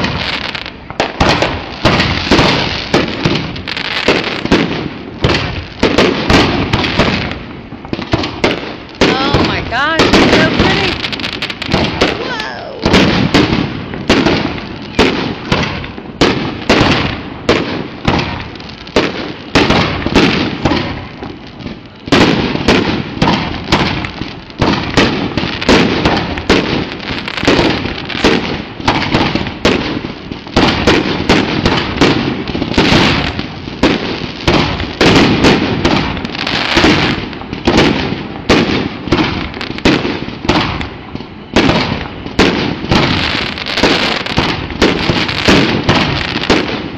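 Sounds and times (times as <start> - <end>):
fireworks bursting: 0.0 - 46.9.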